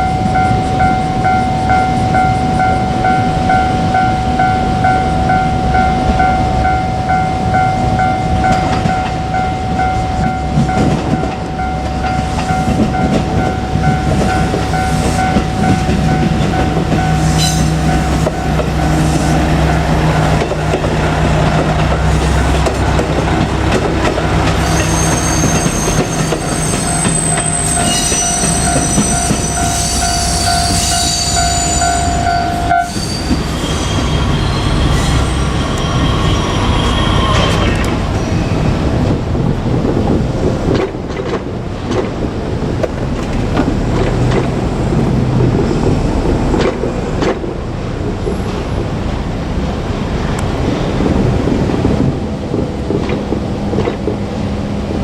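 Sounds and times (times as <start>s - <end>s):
level-crossing alarm ringing: 0.0s - 37.7s
diesel railcar passing: 0.0s - 55.0s
high wheel squeal: 13.5s - 20.3s, 24.4s - 38.8s.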